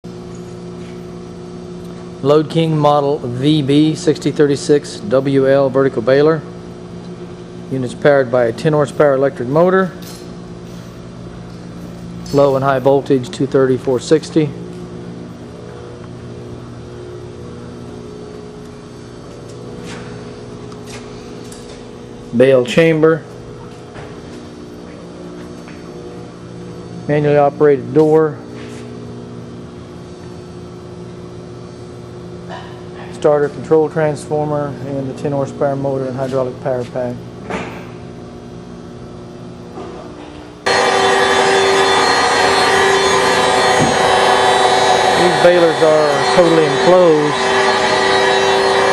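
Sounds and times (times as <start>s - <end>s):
electric motor hum: 40.6s - 48.9s.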